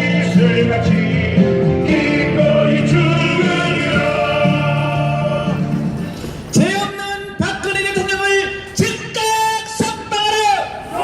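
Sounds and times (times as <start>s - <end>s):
choir singing over instruments: 0.0s - 6.1s.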